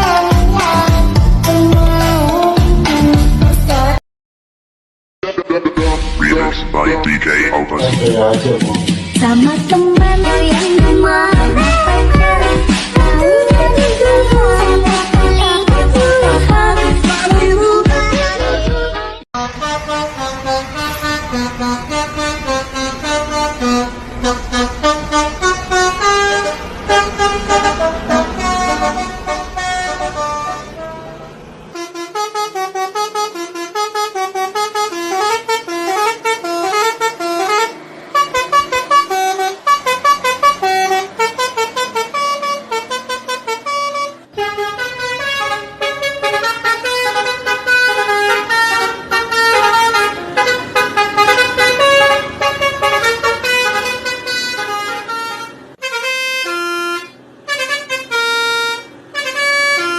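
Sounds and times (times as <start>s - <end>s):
multi-tone bus horns playing tunes: 0.0s - 4.0s, 5.8s - 59.9s
low rumble: 5.8s - 8.6s.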